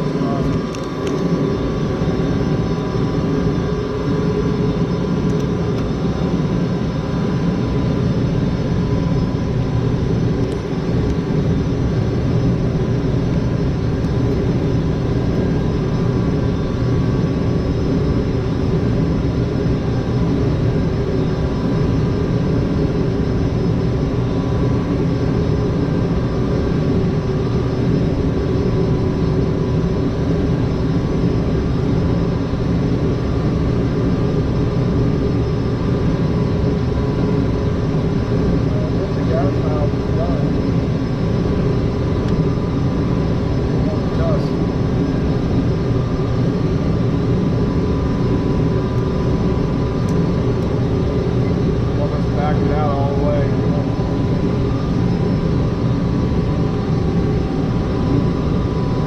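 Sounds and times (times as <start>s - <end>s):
furnace fan whirring: 37.4s - 59.0s.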